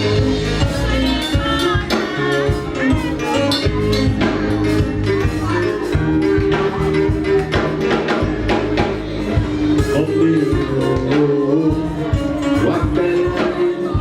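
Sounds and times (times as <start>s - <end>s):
live band music: 0.0s - 14.0s
steady drum beat: 0.0s - 14.0s.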